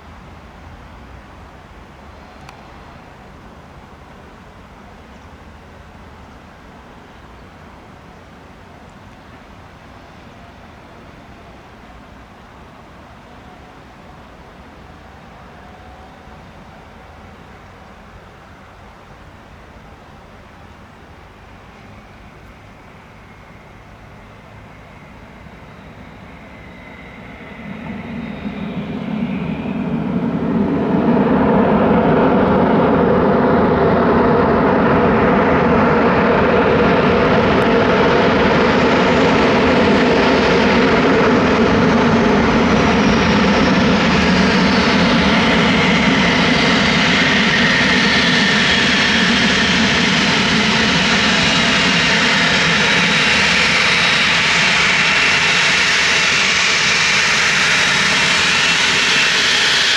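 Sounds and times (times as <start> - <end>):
faint high whine: 0.0 - 59.9
jet engine roar: 21.8 - 59.9.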